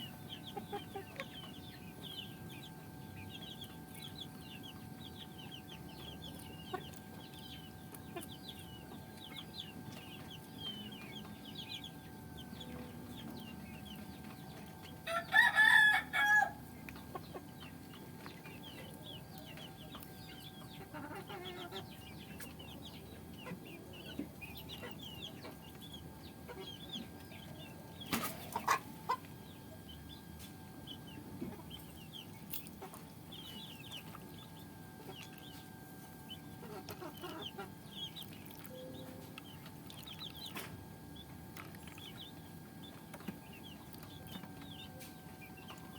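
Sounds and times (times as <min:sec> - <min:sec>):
chicks chirping: 0:00.0 - 0:45.9
rooster crowing: 0:15.0 - 0:16.6.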